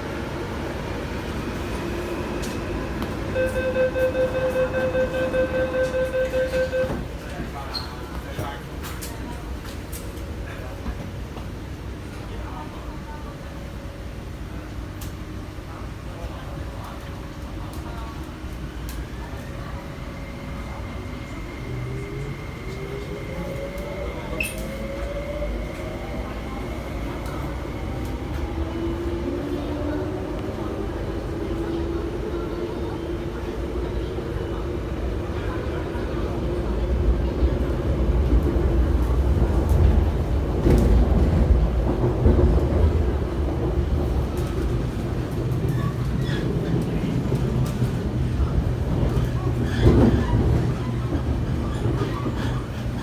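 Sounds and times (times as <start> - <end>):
wheels rumbling on rails: 17.0 - 53.0.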